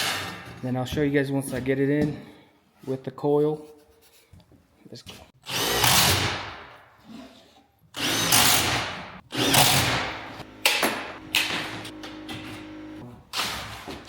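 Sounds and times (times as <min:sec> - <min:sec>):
power drill driving screws into metal: 0:05.5 - 0:06.4, 0:08.0 - 0:11.5.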